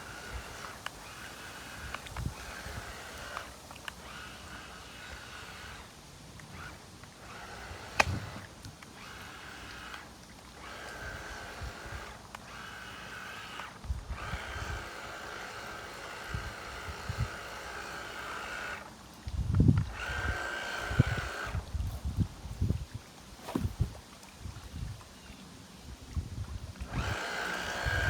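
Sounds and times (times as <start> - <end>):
toy boat motor whining: 0.0 - 23.9, 26.1 - 28.0
sharp click: 7.9 - 8.8.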